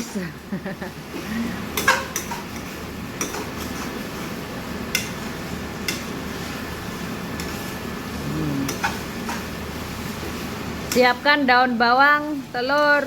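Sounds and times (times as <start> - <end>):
low background hum: 0.0 - 13.0
dishes and utensils clinking: 1.8 - 3.8.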